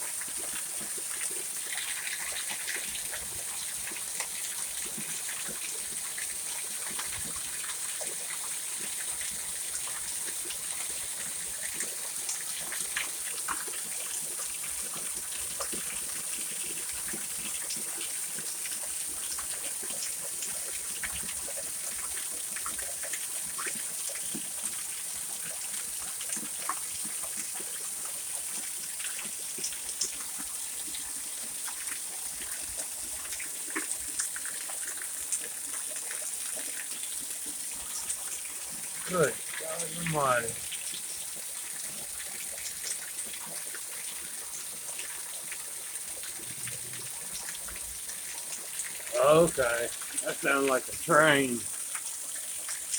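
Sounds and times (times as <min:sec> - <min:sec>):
water dripping and splashing: 0:00.0 - 0:52.9
heavy rain pouring: 0:38.6 - 0:40.8, 0:46.2 - 0:51.8.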